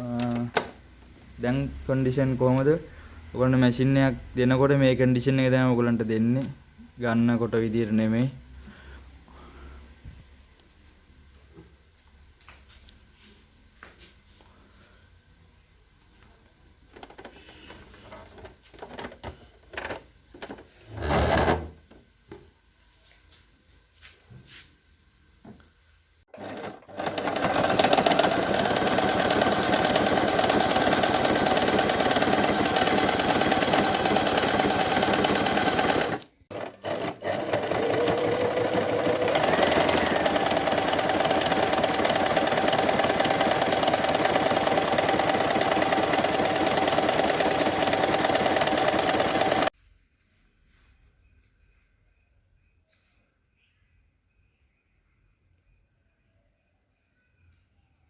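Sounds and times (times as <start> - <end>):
sewing machine running: 26.3 - 49.7.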